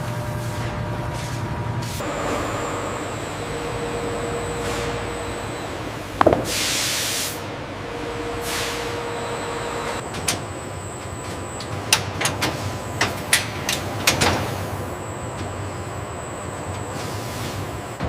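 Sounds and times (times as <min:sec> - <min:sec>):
hissing air: 0:06.2 - 0:07.5.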